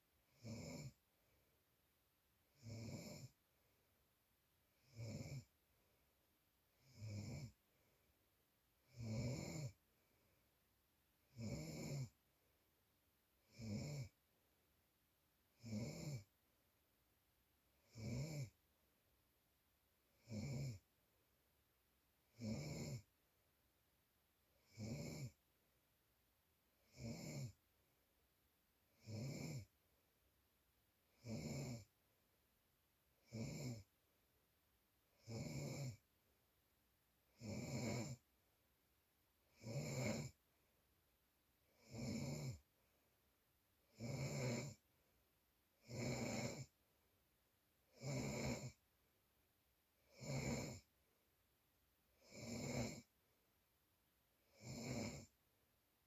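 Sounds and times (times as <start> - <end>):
person snoring: 0.4 - 1.0, 2.6 - 3.3, 4.8 - 5.5, 6.8 - 7.6, 8.9 - 9.8, 11.3 - 12.1, 13.5 - 14.1, 15.6 - 16.3, 17.9 - 18.5, 22.4 - 23.0, 24.7 - 25.4, 26.9 - 27.6, 29.0 - 29.7, 31.2 - 31.9, 33.2 - 33.9, 35.2 - 36.0, 37.4 - 38.2, 39.6 - 40.4, 41.8 - 42.6, 43.9 - 44.8, 45.8 - 46.7, 48.0 - 48.8, 50.1 - 50.8, 52.2 - 53.1, 54.5 - 55.3.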